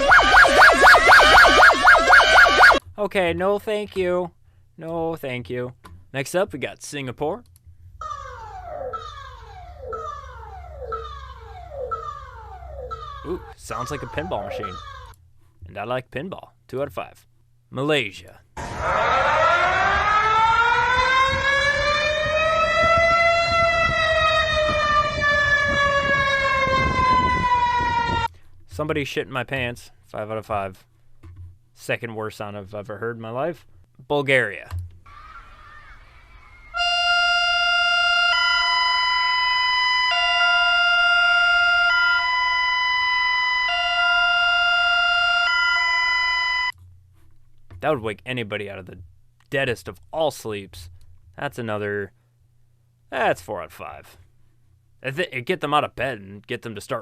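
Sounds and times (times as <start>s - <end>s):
two-tone electronic alarm: 0.0s - 2.8s, 8.0s - 14.8s, 36.6s - 46.8s
warning siren wailing: 0.0s - 2.8s, 8.0s - 15.1s, 18.6s - 28.3s, 35.1s - 46.8s.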